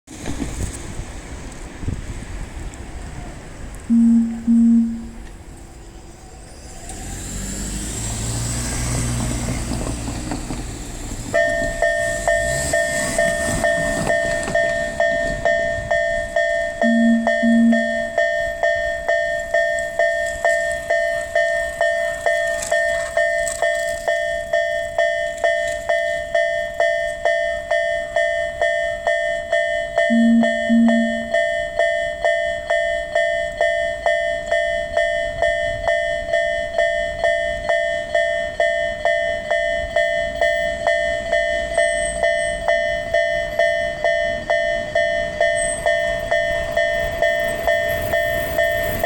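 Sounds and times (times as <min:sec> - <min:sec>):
double low tone: 0:03.9 - 0:05.4, 0:14.6 - 0:20.2, 0:30.0 - 0:31.8
level crossing warning bell: 0:03.9 - 0:07.0, 0:07.7 - 0:49.0.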